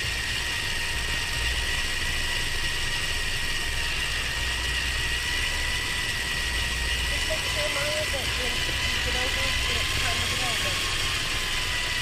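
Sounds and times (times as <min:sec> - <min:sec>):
faint high whine: 0:00.0 - 0:12.0
car engine and road noise: 0:05.0 - 0:10.5.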